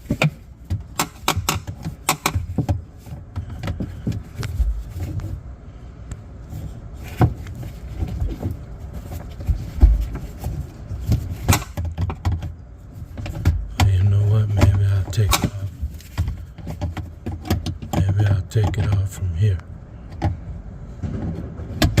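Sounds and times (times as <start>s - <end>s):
hand tool prying plastic clip: 0.0s - 2.7s.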